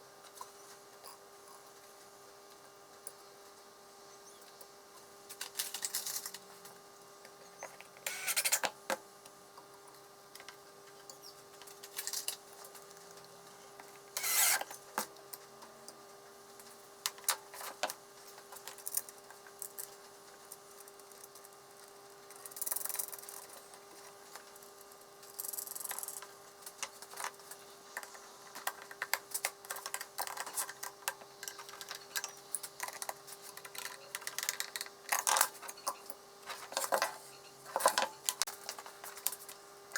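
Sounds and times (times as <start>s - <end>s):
short rasping bursts: 14.2s - 14.6s.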